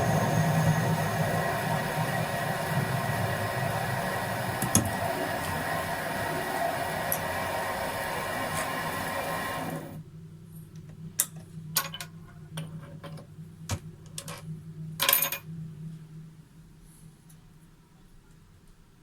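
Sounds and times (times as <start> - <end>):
lathe motor humming: 0.0 - 10.0.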